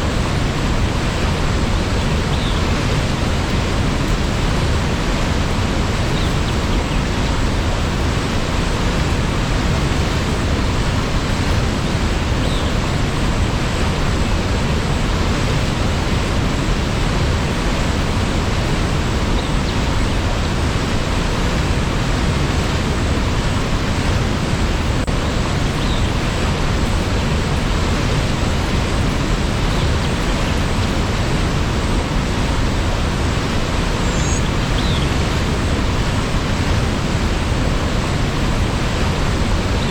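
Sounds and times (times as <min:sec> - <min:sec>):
waterfall roaring: 0:00.0 - 0:39.9.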